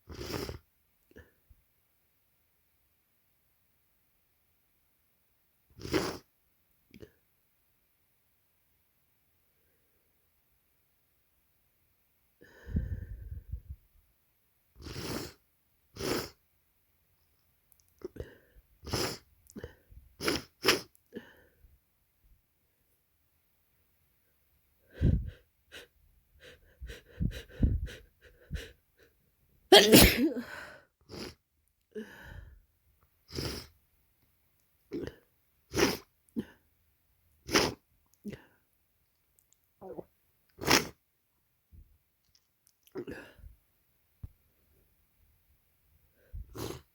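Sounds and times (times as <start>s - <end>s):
person sniffing: 0.0s - 0.6s, 5.8s - 6.3s, 14.8s - 16.4s, 18.0s - 21.4s, 24.9s - 29.1s, 29.7s - 31.4s, 33.2s - 33.8s, 35.7s - 36.6s, 37.4s - 37.8s, 40.6s - 41.0s, 46.2s - 46.9s
person catching breath: 12.4s - 13.6s, 24.9s - 28.8s
person sneezing: 20.2s - 20.9s, 29.7s - 31.4s, 35.7s - 36.5s, 37.5s - 37.8s, 40.6s - 41.0s
person sniffling: 24.9s - 29.1s, 29.7s - 31.4s, 33.3s - 33.8s, 46.2s - 46.9s.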